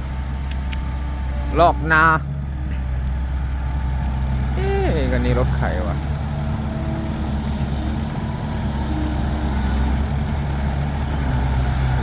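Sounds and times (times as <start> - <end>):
diesel engine idling: 0.0 - 12.0.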